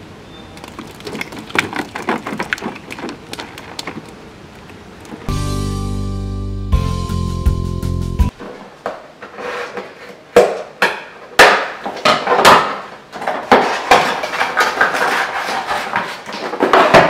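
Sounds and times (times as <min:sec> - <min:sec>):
hard objects knocking and clattering: 0:00.6 - 0:04.2, 0:10.4 - 0:17.0.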